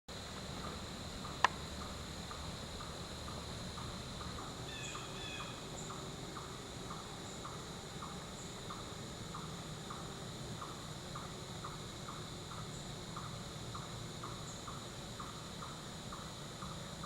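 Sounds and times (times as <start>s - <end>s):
insects droning and chirping: 0.1s - 17.0s
bird call: 4.6s - 6.5s.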